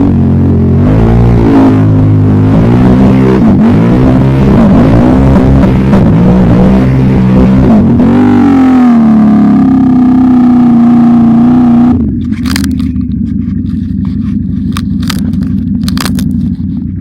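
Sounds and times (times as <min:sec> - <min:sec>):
atv engine revving: 0:00.0 - 0:17.0
sharp clicks and crackles: 0:12.2 - 0:16.9.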